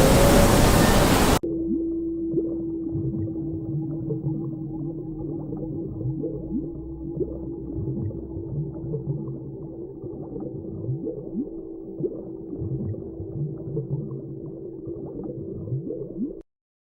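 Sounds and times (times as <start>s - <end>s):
whale calls: 0.0s - 1.4s
low underwater drone: 0.0s - 16.4s.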